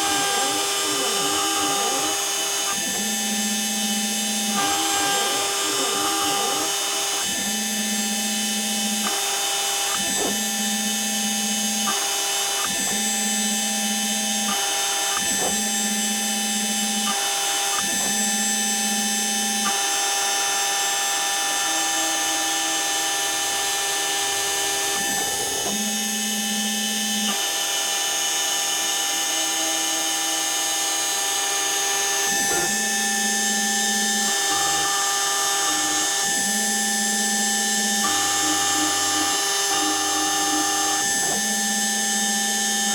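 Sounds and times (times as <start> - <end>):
stepper motors humming: 0.0 - 19.8, 32.2 - 42.9
spindle motor whining: 0.0 - 42.9.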